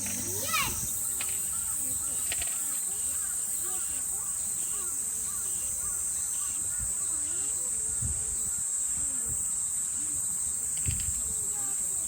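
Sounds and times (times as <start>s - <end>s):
insect call of rising-and-falling notes: 0.0s - 1.8s
cicadas droning: 0.0s - 12.0s.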